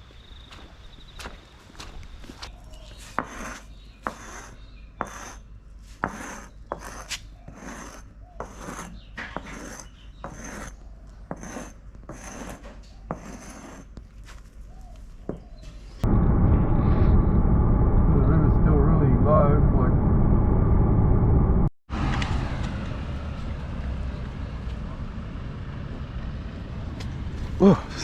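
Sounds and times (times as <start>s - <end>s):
footsteps walking: 0.0s - 3.2s, 14.0s - 15.9s.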